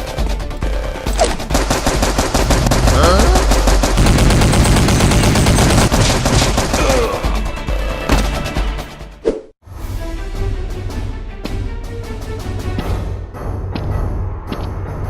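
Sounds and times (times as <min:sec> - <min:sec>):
rapid automatic gunfire: 0:00.0 - 0:07.3.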